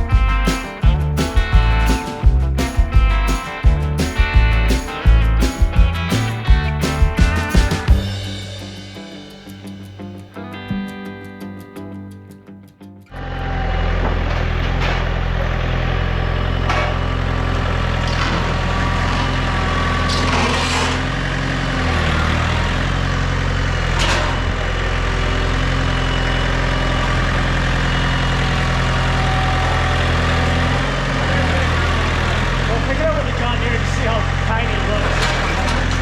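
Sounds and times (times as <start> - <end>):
sharp knocks: 0.0 - 9.1
engine idling: 0.0 - 10.8, 13.2 - 36.0.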